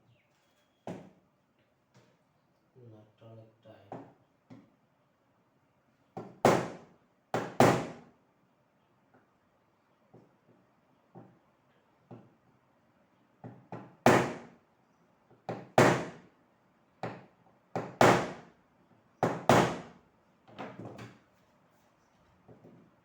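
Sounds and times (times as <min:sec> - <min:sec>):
sharp knocks on fan motor: 0:06.2 - 0:08.0, 0:13.4 - 0:14.5, 0:15.5 - 0:16.3, 0:17.0 - 0:18.5, 0:19.2 - 0:19.9.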